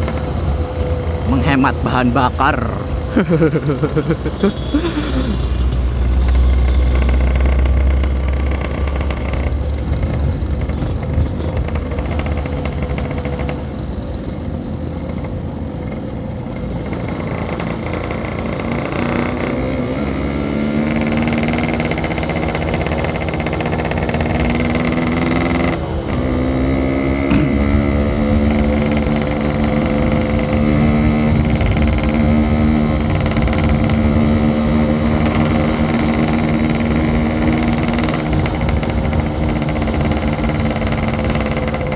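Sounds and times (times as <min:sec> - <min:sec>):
two-stroke motorcycle engine cruising: 0:00.0 - 0:41.9
wind rumble on microphone: 0:27.8 - 0:34.5.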